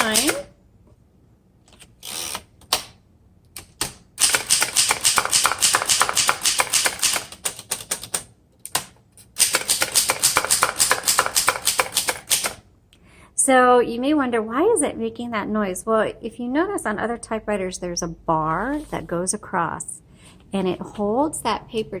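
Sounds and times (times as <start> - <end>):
manual typewriter typing: 0.0 - 0.5, 3.6 - 12.6.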